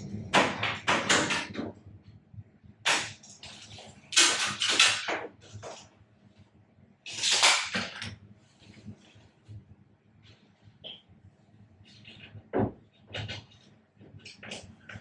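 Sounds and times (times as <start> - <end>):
scraping and rubbing handling noises: 7.1 - 15.0.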